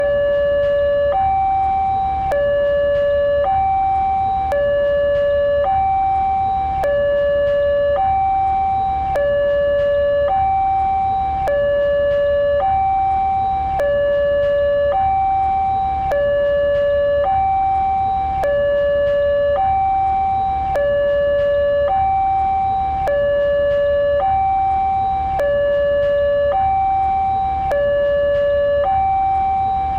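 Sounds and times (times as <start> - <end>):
alarm clicks: 0.0 - 29.9
two-tone crossing warning alarm: 0.0 - 29.9.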